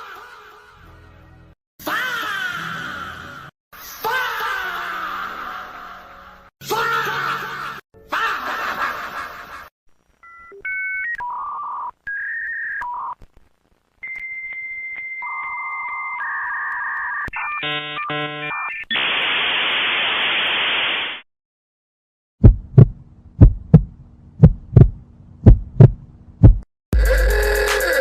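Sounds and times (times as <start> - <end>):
hissing static: 18.9 - 21.2.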